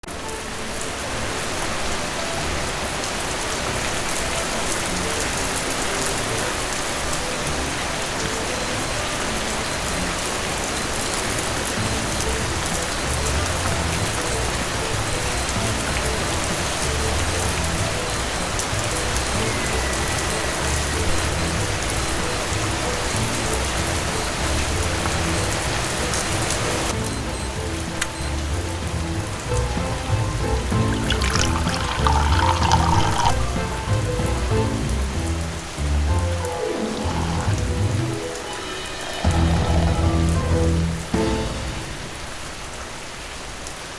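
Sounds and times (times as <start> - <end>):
steady rain falling: 0.0 - 43.9
soft low notes: 33.4 - 38.3.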